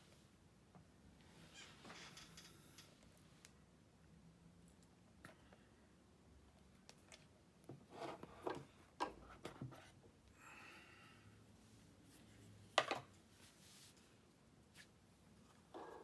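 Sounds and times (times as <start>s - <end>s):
soft sliding rub: 13.3s - 15.0s.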